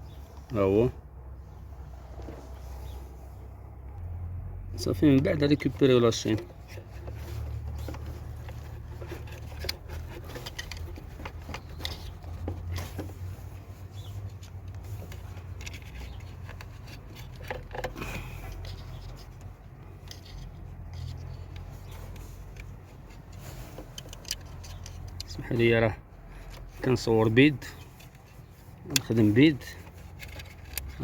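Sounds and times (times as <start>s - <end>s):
light metallic clicks and scrapes: 5.0s - 31.0s.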